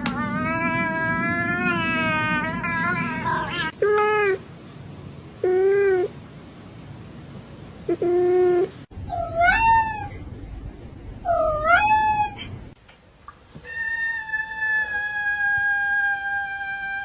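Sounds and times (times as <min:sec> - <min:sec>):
cat meowing: 0:07.9 - 0:10.2, 0:11.3 - 0:12.5.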